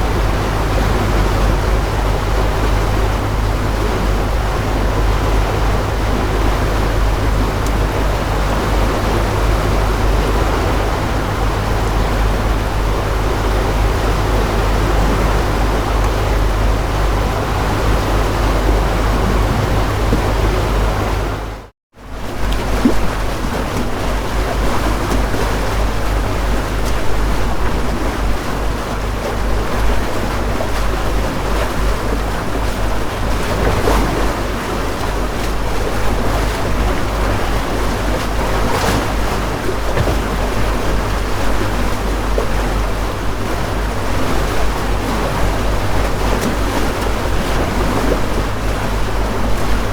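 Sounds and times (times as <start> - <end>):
boat motor humming: 0.0 - 49.9
water splashing against hull: 0.0 - 49.9.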